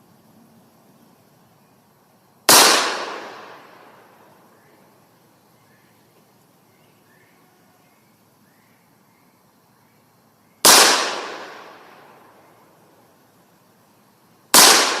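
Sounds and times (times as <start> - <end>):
revolver gunshot echoing: 2.5 - 4.0, 10.6 - 12.1, 14.6 - 15.0.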